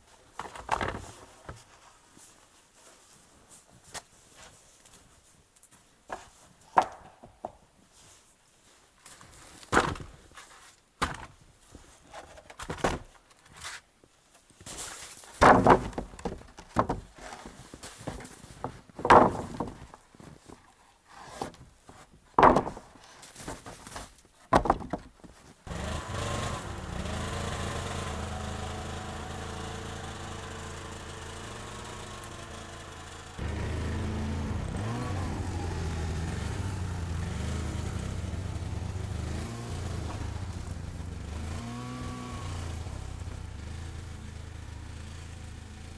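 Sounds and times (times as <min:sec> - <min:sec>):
heavy wooden thunks: 0:06.8 - 0:07.6, 0:15.4 - 0:20.6, 0:21.3 - 0:25.4, 0:38.6 - 0:41.2
steady engine hum: 0:25.7 - 0:45.9.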